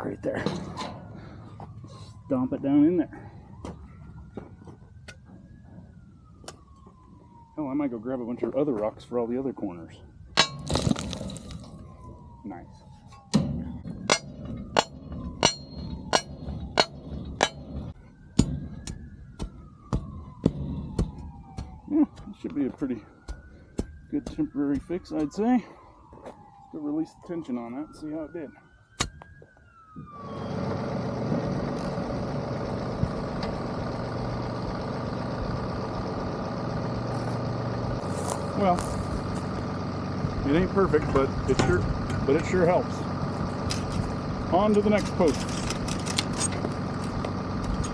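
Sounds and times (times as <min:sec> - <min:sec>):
steel bar striking rock: 0:10.4 - 0:11.6, 0:13.2 - 0:21.7
tractor diesel engine running: 0:13.1 - 0:25.5, 0:29.8 - 0:47.9.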